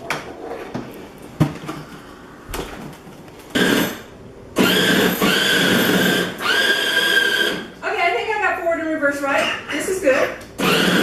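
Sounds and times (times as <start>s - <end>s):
toy car electric motors whining: 4.6s - 7.7s, 10.6s - 11.0s.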